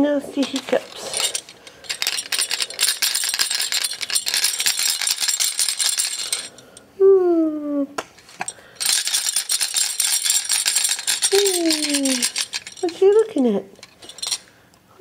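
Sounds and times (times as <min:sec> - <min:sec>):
plastic toy rattle shaking: 0:00.0 - 0:06.6, 0:08.2 - 0:14.4
person saying oh: 0:07.0 - 0:07.9.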